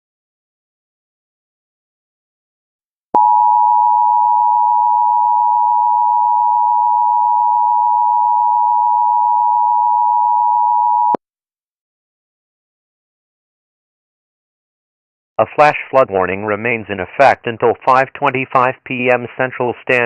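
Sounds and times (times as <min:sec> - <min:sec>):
two-tone electronic alarm: 0:03.2 - 0:11.2.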